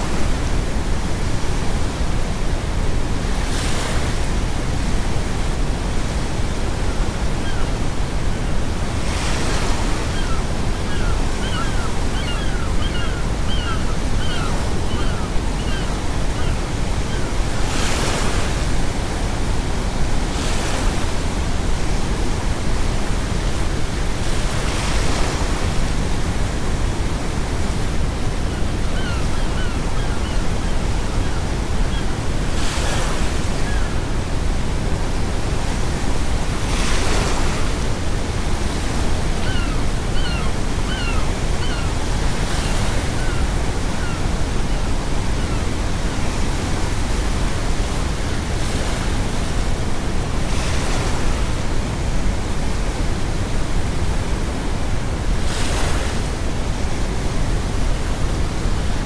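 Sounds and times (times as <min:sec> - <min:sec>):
sea waves breaking: 0:07.4 - 0:52.8
gulls calling: 0:09.2 - 0:18.2, 0:28.2 - 0:34.1, 0:38.8 - 0:46.4.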